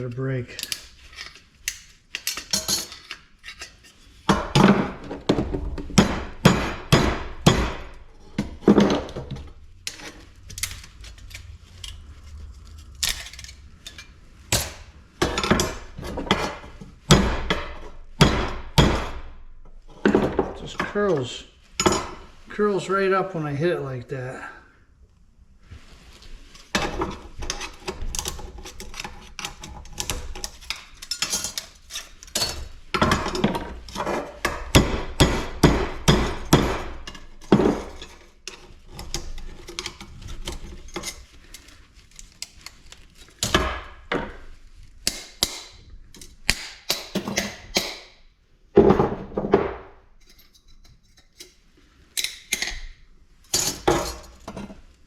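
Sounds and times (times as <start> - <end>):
hammer striking aluminum: 6.0 - 8.0.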